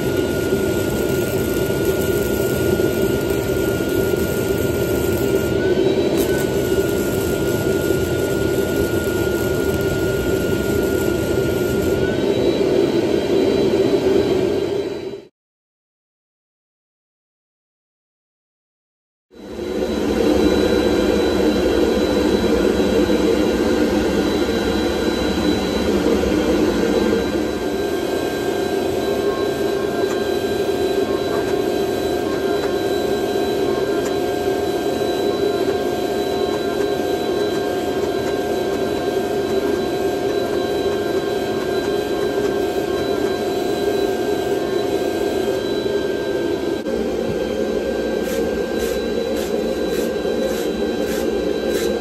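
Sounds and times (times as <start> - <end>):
forging machinery rushing noise: 0.0 - 12.7, 47.8 - 52.0
machinery whining tones: 0.0 - 15.3, 19.4 - 52.0.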